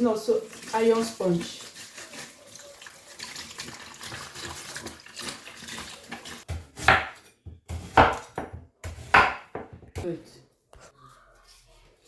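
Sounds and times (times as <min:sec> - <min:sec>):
steel wool scrubbing fish: 0:00.0 - 0:03.8
water running from a tap: 0:00.0 - 0:06.5.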